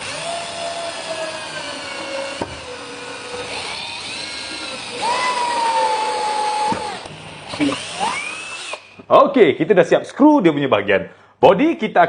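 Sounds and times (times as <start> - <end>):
power drill whine: 0.0 - 9.0
drill click: 0.0 - 9.1.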